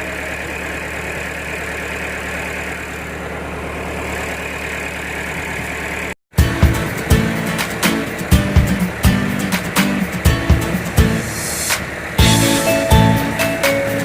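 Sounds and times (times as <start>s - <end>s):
vehicle engine idling: 0.0s - 14.0s
music: 6.4s - 14.0s.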